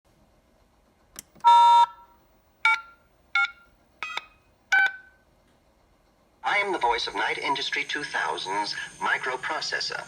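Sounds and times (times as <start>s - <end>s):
short electronic beeps: 1.4s - 2.0s, 2.7s - 5.2s.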